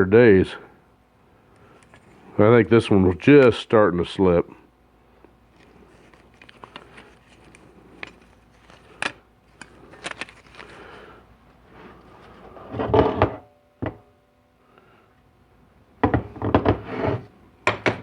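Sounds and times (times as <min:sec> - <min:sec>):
metal parts clicking and clinking: 0:06.0 - 0:10.8.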